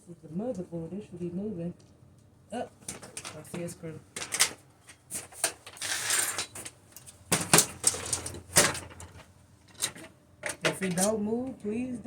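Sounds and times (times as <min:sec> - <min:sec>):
scraping rustle: 0:04.5 - 0:09.3.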